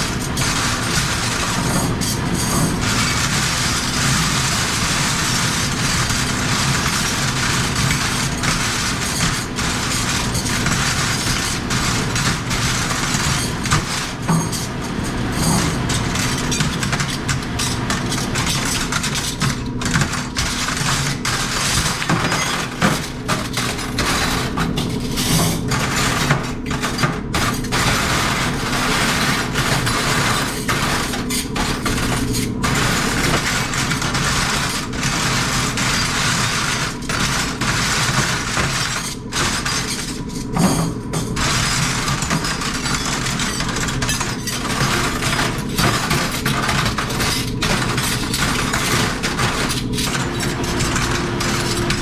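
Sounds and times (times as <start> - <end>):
low machine hum: 0.0 - 21.0, 47.4 - 52.0.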